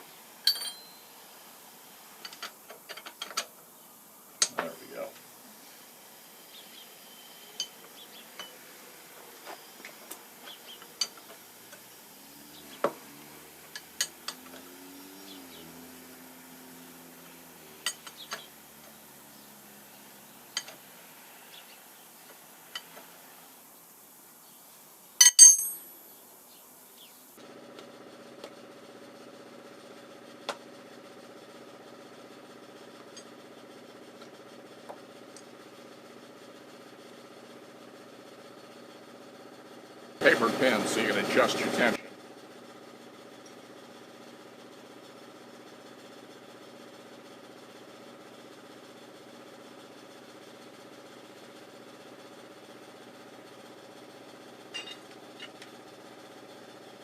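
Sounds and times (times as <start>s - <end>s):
steady motor hum: 0.0s - 23.7s, 27.4s - 57.0s
steel tools clinking: 0.4s - 1.1s, 7.6s - 8.6s, 17.8s - 18.4s, 25.2s - 25.9s, 54.7s - 55.6s.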